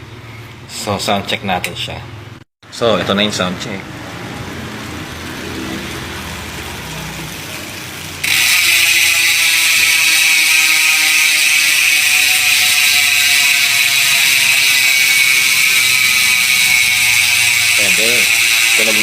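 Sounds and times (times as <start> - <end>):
bicycle hub freewheel buzz: 4.6 - 19.0.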